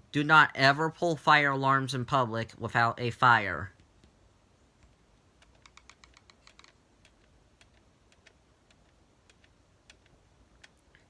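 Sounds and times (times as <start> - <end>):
faint clicking: 4.8 - 11.0.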